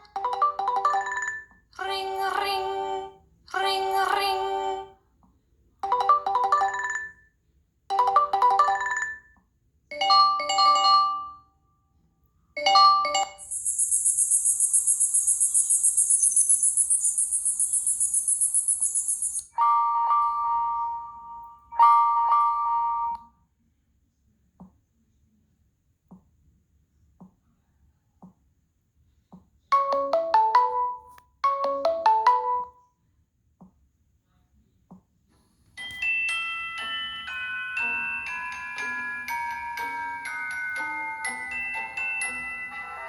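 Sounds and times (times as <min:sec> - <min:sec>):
melodic chime ringtone: 0:00.0 - 0:02.4, 0:05.8 - 0:07.3, 0:07.9 - 0:11.5, 0:12.6 - 0:23.2, 0:29.8 - 0:32.8, 0:35.8 - 0:43.0.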